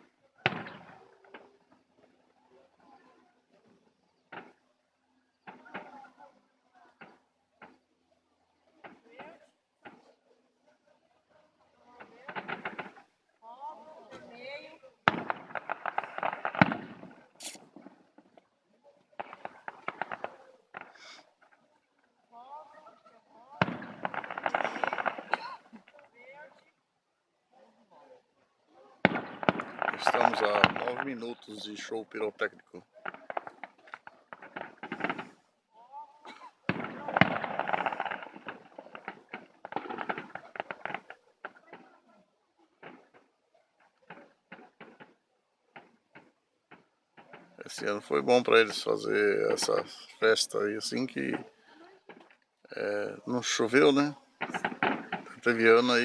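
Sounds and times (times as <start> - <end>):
fireworks cracking: 0.0 - 2.2, 4.2 - 4.6, 5.4 - 6.2, 7.0 - 7.8, 8.8 - 10.1, 11.9 - 21.6, 22.3 - 26.8, 29.0 - 56.0
loud firework burst: 23.6 - 25.6, 29.1 - 31.2, 36.7 - 41.1, 54.4 - 56.0
loud firework bang: 54.4 - 56.0.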